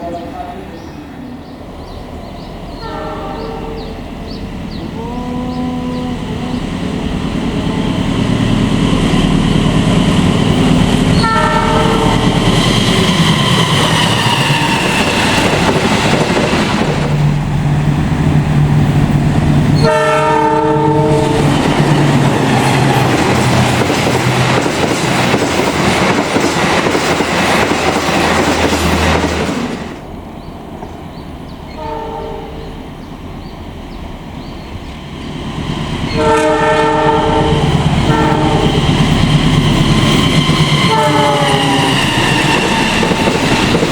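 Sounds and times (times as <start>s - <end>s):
train rumble and wheel clatter: 0.0s - 43.9s
locomotive horn blasts: 2.8s - 4.0s, 11.2s - 12.2s, 19.8s - 21.5s, 31.7s - 32.8s, 36.1s - 38.8s, 40.8s - 42.0s.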